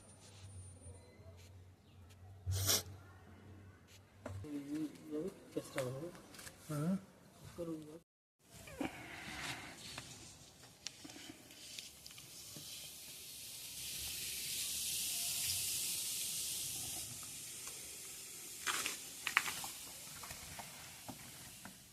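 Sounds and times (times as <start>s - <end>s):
hissing spray: 11.5s - 21.7s.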